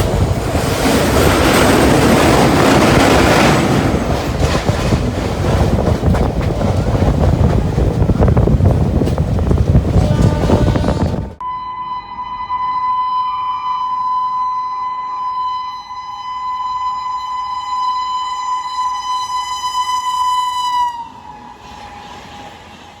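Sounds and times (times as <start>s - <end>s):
train horn blast: 9.9s - 23.0s.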